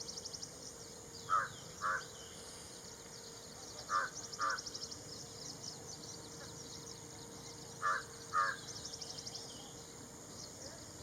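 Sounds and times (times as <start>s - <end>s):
harsh caw-like bird calls: 1.2s - 2.3s, 3.9s - 4.8s, 7.8s - 8.8s.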